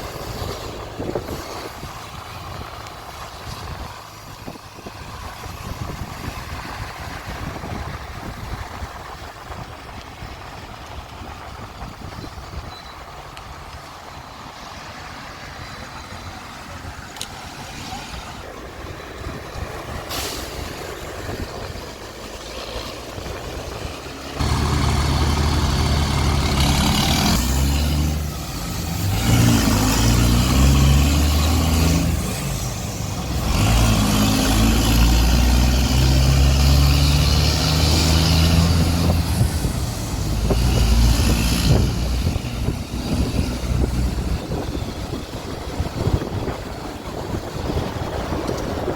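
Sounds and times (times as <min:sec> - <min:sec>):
street noise: 0:00.0 - 0:48.9
coach diesel engine revving: 0:19.6 - 0:48.9.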